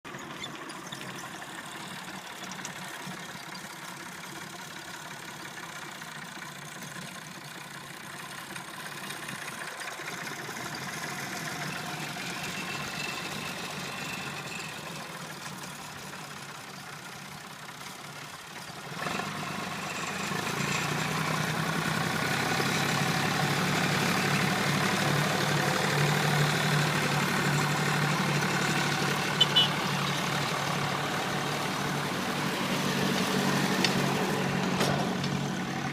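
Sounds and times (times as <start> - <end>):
engine running: 0.0 - 35.9.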